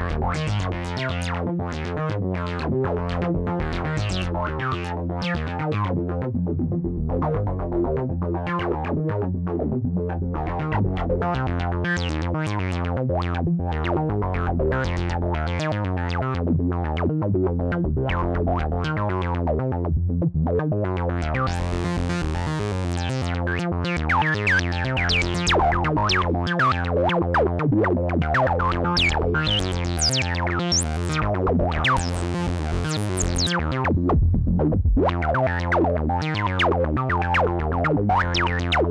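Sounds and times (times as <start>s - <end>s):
sustained synth bass: 0.0s - 38.9s
synthesizer note pattern: 28.4s - 34.2s.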